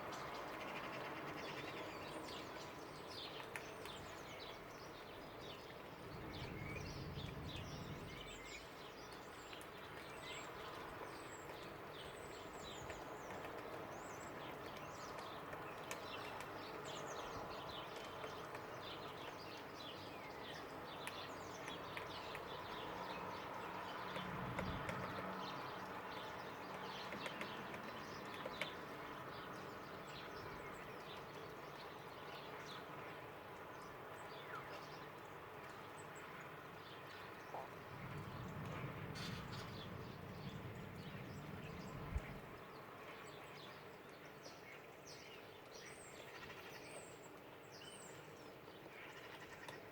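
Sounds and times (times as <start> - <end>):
small birds chirping: 0.1 - 33.0, 33.6 - 49.9
low rumble: 6.1 - 8.5, 37.8 - 42.5
steady background hum: 37.1 - 43.2.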